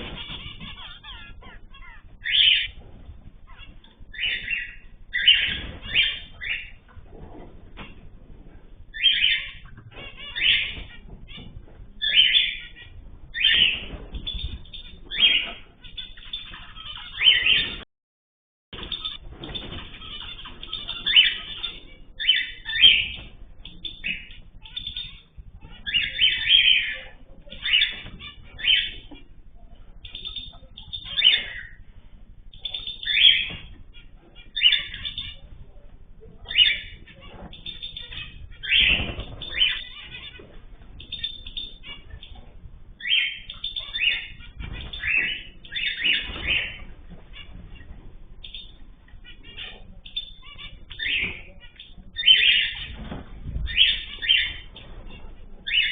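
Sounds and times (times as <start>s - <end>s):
loud cage bird call: 0.0s - 7.0s, 8.8s - 17.8s, 18.8s - 31.9s, 32.5s - 55.9s
soft bird chirps: 3.4s - 7.0s, 18.8s - 55.9s.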